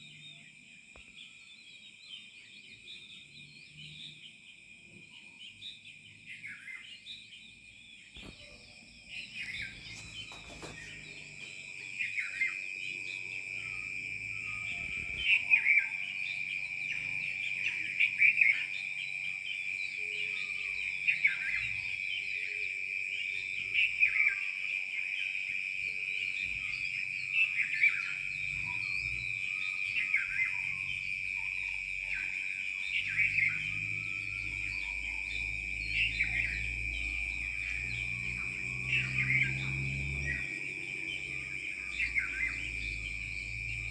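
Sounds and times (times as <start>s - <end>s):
high insect drone: 0.0s - 43.9s
birds pitch-sliding calls: 9.2s - 11.6s.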